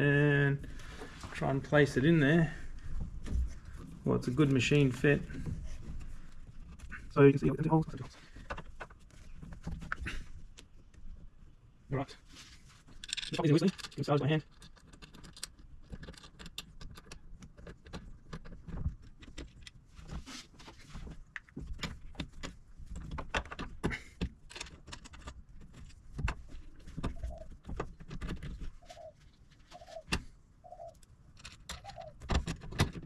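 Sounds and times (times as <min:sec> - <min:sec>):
metal bolts clinking and rattling: 0:12.9 - 0:18.3
dove cooing: 0:27.0 - 0:27.6, 0:28.8 - 0:31.0, 0:31.7 - 0:32.2.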